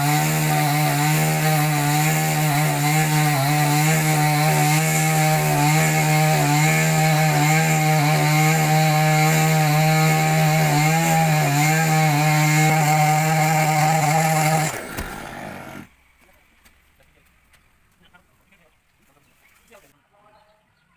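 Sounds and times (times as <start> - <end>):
chainsaw cutting wood: 0.0 - 15.9.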